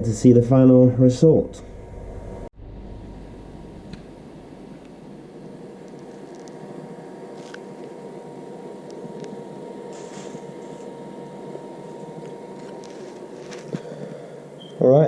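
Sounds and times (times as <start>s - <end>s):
steady mechanical hum: 0.0s - 15.0s.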